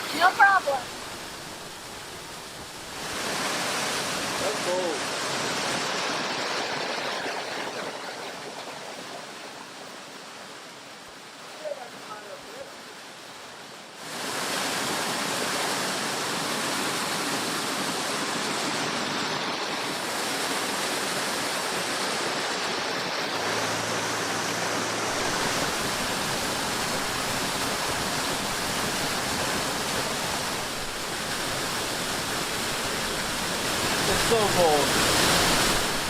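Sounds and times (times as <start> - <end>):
waterfall rushing: 0.0 - 36.0.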